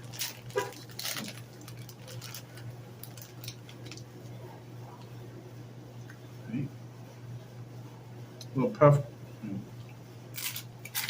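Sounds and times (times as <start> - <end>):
snack packet crackling: 0.0 - 4.1, 10.4 - 11.0
steady low hum: 0.0 - 11.0.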